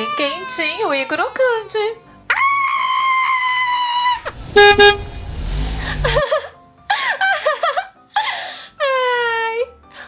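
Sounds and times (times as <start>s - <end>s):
car horn honks: 4.2s - 5.8s
car engine rumble: 4.2s - 6.2s.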